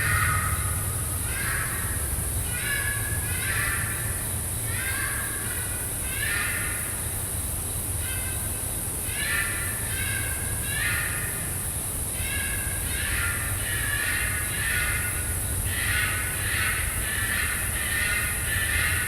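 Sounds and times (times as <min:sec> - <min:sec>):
steady high hiss: 0:00.0 - 0:19.0.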